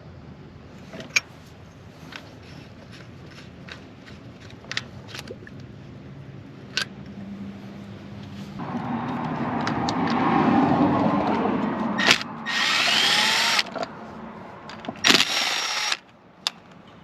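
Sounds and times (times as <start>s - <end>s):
power tool running: 12.0s - 13.7s, 15.1s - 16.0s.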